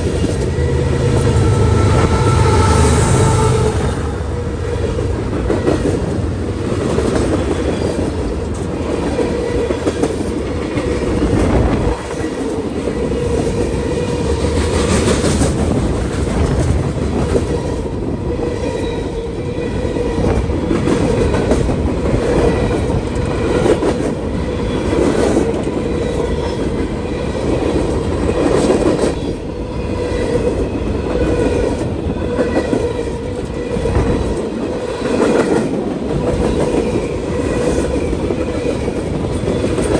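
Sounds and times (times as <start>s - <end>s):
wheels clicking on rails: 0.0s - 2.2s, 30.2s - 39.9s
train rumbling past: 0.0s - 39.9s.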